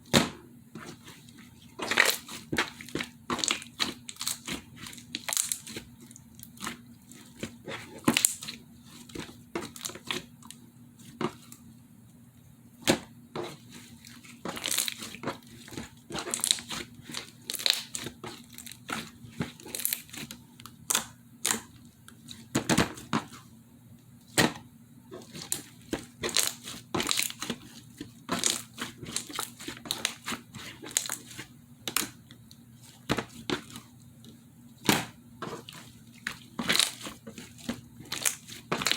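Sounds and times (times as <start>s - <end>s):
sticky squishing: 0.8s - 11.6s, 12.8s - 23.5s, 24.3s - 38.9s
slime crackling and popping: 16.2s - 18.9s, 19.6s - 20.2s, 28.3s - 31.3s, 36.6s - 38.9s.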